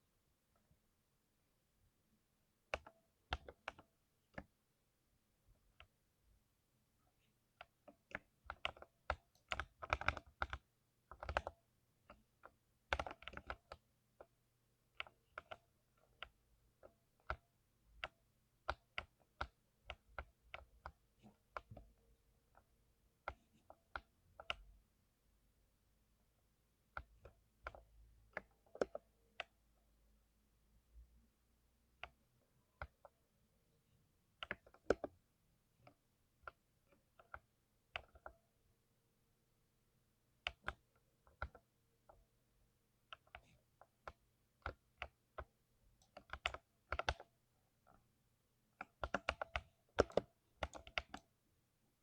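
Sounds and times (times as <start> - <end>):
mechanical keyboard typing: 7.6 - 11.5, 12.4 - 13.8, 34.4 - 35.2, 43.1 - 47.3, 48.8 - 51.3.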